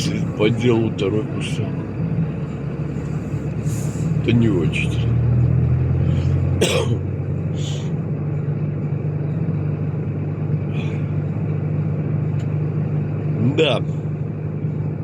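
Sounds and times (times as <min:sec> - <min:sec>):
diesel car engine running: 0:00.0 - 0:15.0
short cough: 0:06.6 - 0:07.1.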